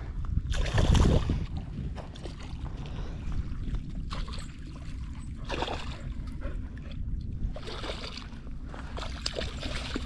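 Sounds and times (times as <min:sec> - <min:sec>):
wind rumble on microphone: 0:00.0 - 0:10.0
water splashing: 0:03.7 - 0:06.4, 0:07.6 - 0:10.0.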